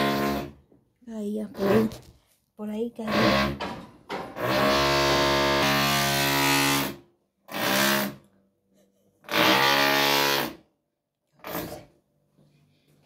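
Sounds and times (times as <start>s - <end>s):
electric drill running: 9.3s - 10.6s.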